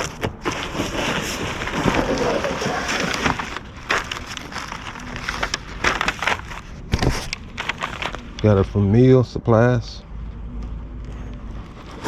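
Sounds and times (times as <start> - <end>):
packaging rustling and crackling: 0.0 - 8.9.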